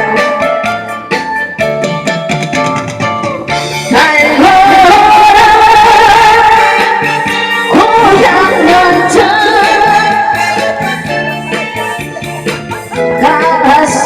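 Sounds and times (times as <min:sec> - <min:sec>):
amplified backing track: 0:00.0 - 0:14.0
woman singing with vibrato: 0:03.4 - 0:14.0.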